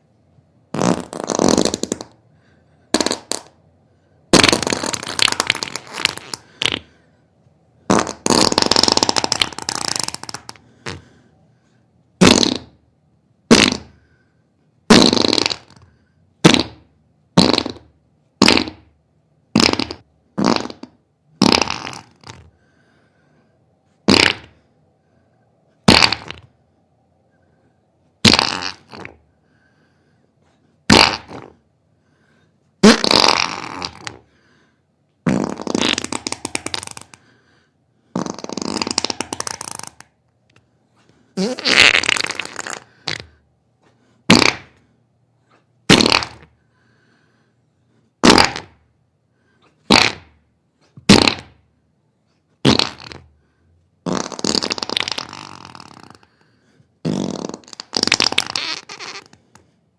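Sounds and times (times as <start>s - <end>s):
farts: 0.7s - 2.2s, 2.9s - 3.6s, 4.3s - 6.9s, 7.9s - 11.1s, 12.2s - 12.8s, 13.5s - 14.0s, 14.9s - 18.9s, 19.5s - 22.5s, 24.0s - 24.6s, 25.8s - 26.5s, 28.2s - 29.2s, 30.9s - 31.6s, 32.8s - 34.3s, 35.2s - 37.3s, 38.1s - 40.1s, 41.4s - 43.4s, 44.3s - 44.9s, 45.5s - 46.6s, 48.2s - 48.8s, 49.8s - 51.6s, 52.6s - 53.3s, 54.0s - 56.4s, 57.0s - 59.7s.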